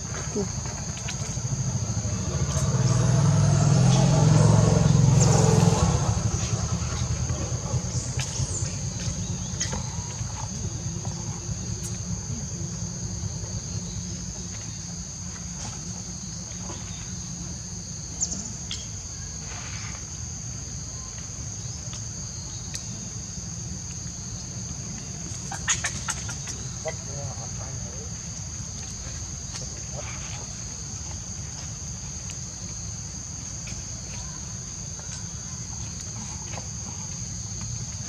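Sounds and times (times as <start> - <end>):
low steady rumble: 0.0 - 19.4
insects buzzing: 0.0 - 38.0.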